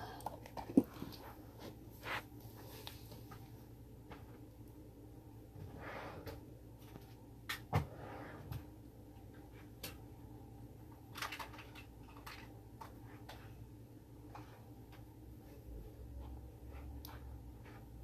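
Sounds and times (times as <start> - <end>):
objects clicking and knocking: 11.0 - 13.4.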